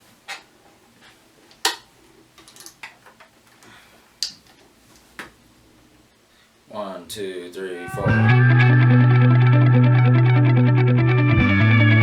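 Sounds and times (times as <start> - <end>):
handling clicks and knocks: 1.5 - 3.6.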